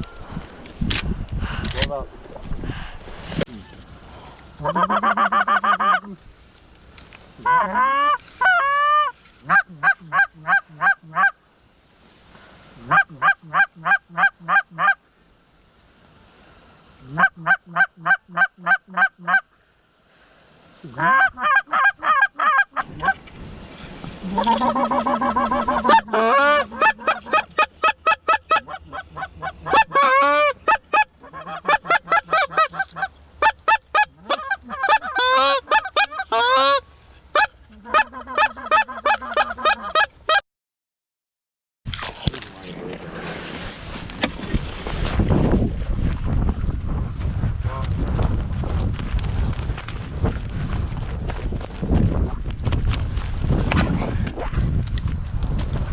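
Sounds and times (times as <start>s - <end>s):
goose honking: 4.6s - 6.1s, 7.4s - 11.4s, 24.2s - 36.8s, 37.4s - 40.4s.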